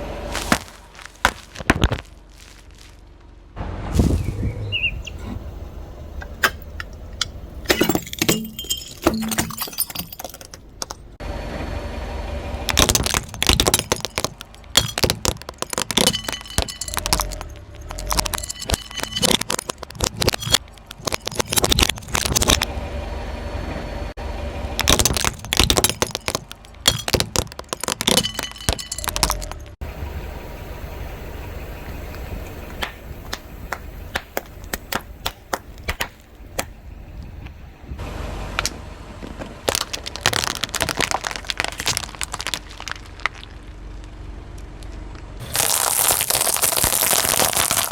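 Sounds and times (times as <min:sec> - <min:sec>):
car engine low rumble: 0:00.0 - 0:47.9
tyre crushing brittle objects: 0:00.2 - 0:03.3, 0:12.7 - 0:22.7, 0:24.8 - 0:29.8, 0:38.6 - 0:43.8, 0:45.4 - 0:47.9.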